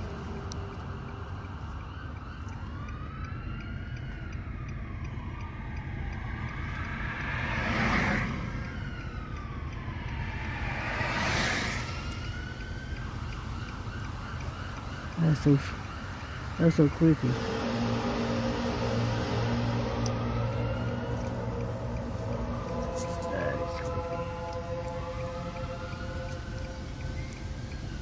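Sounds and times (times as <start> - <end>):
wavering tone rising and falling: 0.0 - 15.0, 15.8 - 28.0
steady low rumble: 0.0 - 28.0
rushing noise: 5.2 - 13.3, 15.9 - 28.0.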